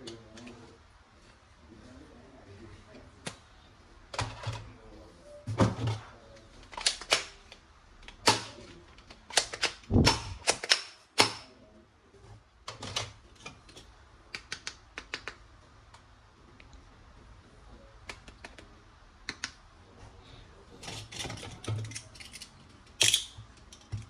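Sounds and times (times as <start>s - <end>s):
plastic toy parts clicking: 20.9s - 24.0s.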